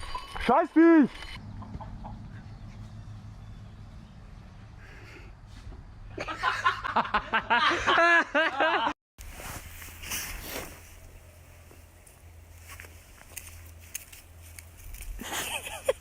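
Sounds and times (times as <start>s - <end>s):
person laughing hard: 6.2s - 8.9s, 15.2s - 16.0s.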